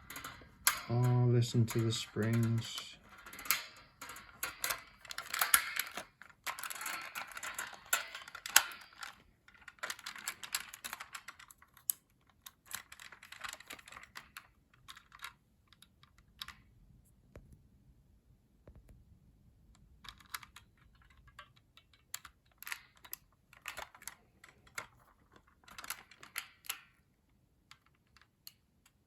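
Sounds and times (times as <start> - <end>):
plastic toy clicking and rattling: 0.0 - 16.7, 19.8 - 29.0.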